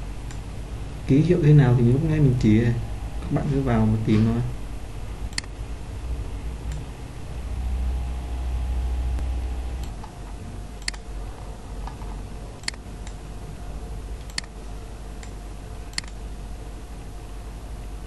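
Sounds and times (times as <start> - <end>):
faint steady hum: 0.0 - 18.0
low rumble: 0.0 - 18.0
computer mouse clicking: 10.8 - 11.0, 11.8 - 13.2, 14.2 - 14.6, 15.2 - 16.2.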